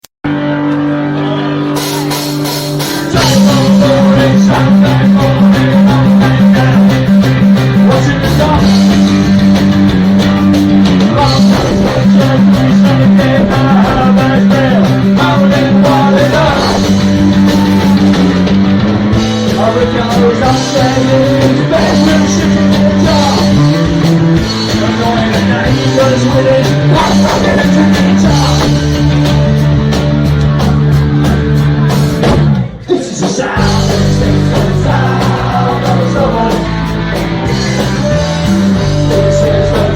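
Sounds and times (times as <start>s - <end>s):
punk rock song with singer: 0.3s - 39.9s.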